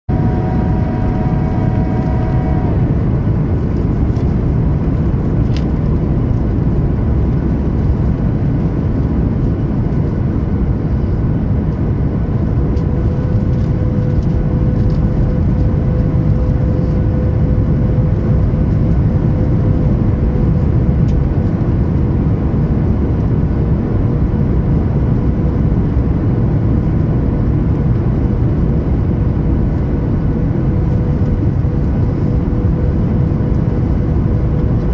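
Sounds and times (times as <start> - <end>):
airplane cabin roar: 0.0 - 34.9
steady tone: 0.1 - 3.6.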